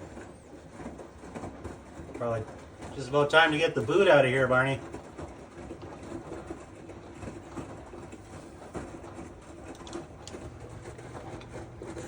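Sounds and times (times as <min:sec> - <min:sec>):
washing machine humming: 0:00.0 - 0:12.0.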